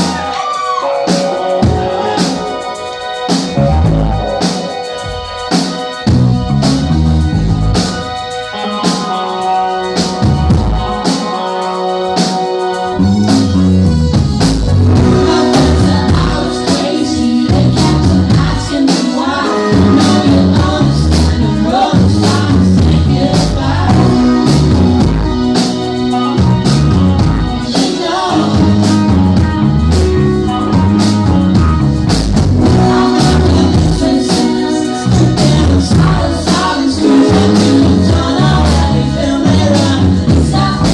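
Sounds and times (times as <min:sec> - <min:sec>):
indie pop band playing live: 0:00.0 - 0:40.9
person singing: 0:14.9 - 0:26.4, 0:32.6 - 0:40.9.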